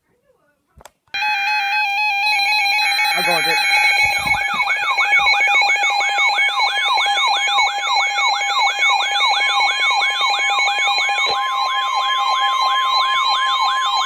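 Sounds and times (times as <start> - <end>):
steady alert tone: 1.2 - 8.6
electronic siren alarm yelping: 1.2 - 14.0.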